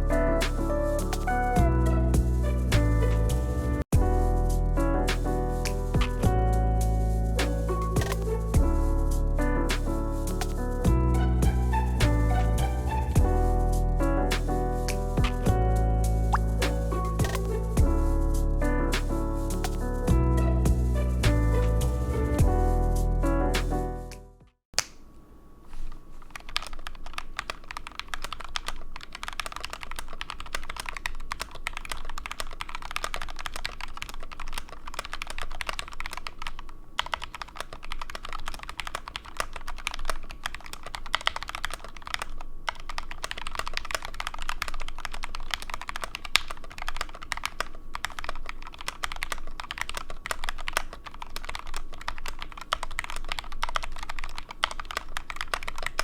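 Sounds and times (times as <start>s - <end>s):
fast typing on mechanical keyboard: 7.5s - 8.5s, 16.3s - 17.7s, 26.2s - 56.0s.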